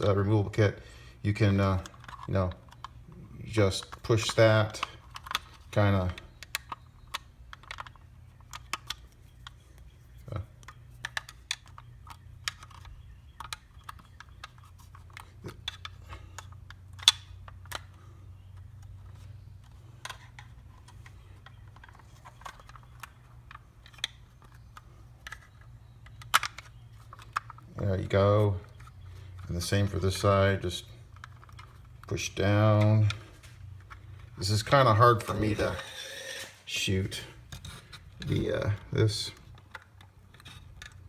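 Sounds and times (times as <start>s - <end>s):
screwdriver prying plastic clicks: 4.8s - 9.6s.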